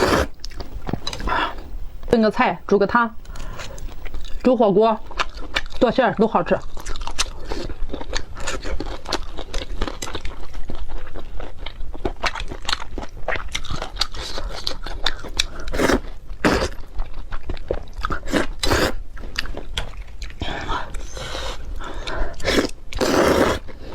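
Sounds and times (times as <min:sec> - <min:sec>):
loud bites or slurps: 0:00.0 - 0:00.6, 0:15.7 - 0:16.8, 0:18.3 - 0:19.0, 0:22.4 - 0:23.7
crunching and chewing food: 0:00.0 - 0:01.7, 0:03.2 - 0:23.9.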